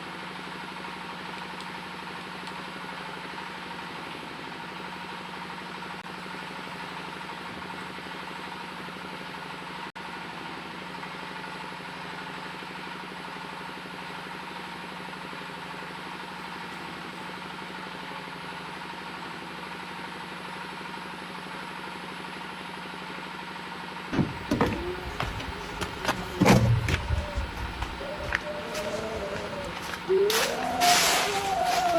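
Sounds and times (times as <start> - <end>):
steady machinery hum: 24.1 - 31.9.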